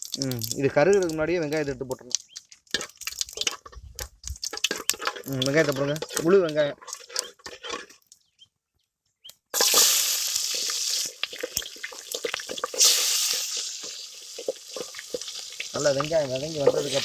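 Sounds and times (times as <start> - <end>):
onions sizzling in hot oil: 0.0 - 1.8, 9.5 - 17.0
ladle scraping a pan: 4.4 - 8.0, 9.6 - 17.0.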